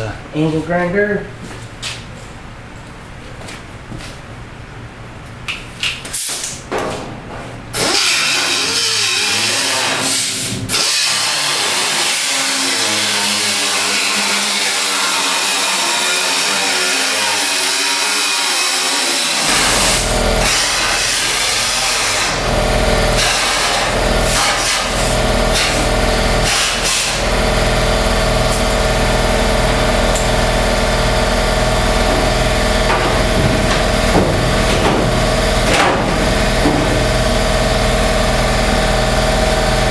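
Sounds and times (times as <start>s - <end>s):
angle grinder cutting steel: 7.8s - 34.1s.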